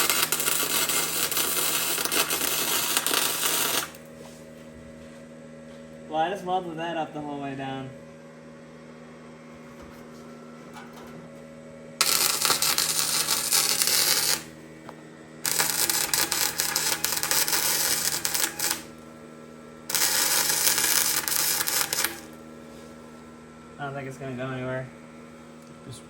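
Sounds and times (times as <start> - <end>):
welder sputtering crackle: 0.0 - 4.2, 12.0 - 14.6, 15.4 - 19.1, 19.9 - 22.4
steady electrical hum: 0.0 - 26.0.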